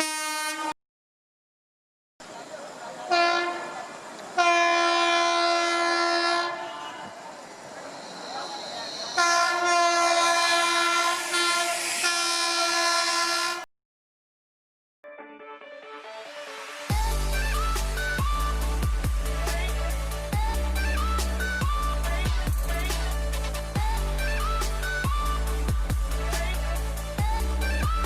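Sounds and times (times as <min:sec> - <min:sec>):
train horn blasts: 0:00.0 - 0:00.8, 0:03.1 - 0:07.2, 0:09.1 - 0:13.6
running train rumbling: 0:02.3 - 0:13.6, 0:16.9 - 0:28.0.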